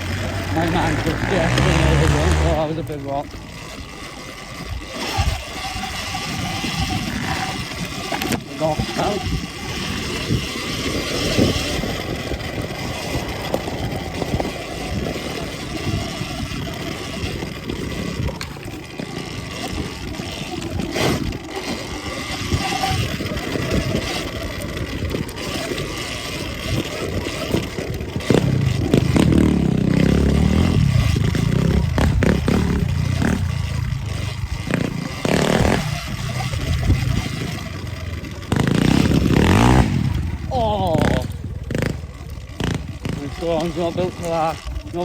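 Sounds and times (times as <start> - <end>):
dirt bike rattling over rocks: 0.0 - 45.0
steady rushing noise: 0.0 - 45.0
heavy low rumble: 11.2 - 16.7, 28.3 - 37.2.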